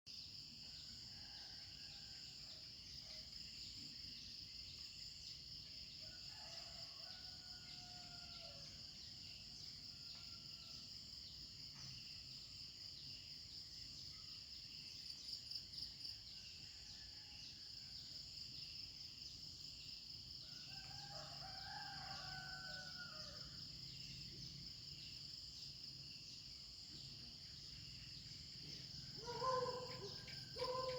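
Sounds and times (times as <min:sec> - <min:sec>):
insects chirring: 0:02.8 - 0:30.9
distant roosters crowing: 0:06.3 - 0:08.7, 0:20.6 - 0:23.6, 0:29.0 - 0:30.9.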